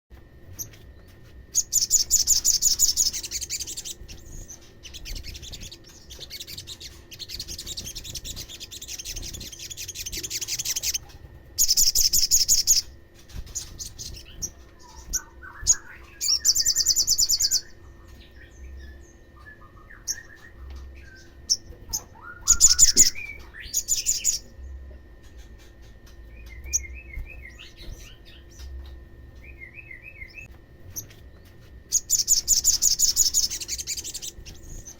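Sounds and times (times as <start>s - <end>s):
bird twittering chirps: 0.6s - 31.1s, 31.9s - 34.9s
bird high trills: 1.5s - 24.5s.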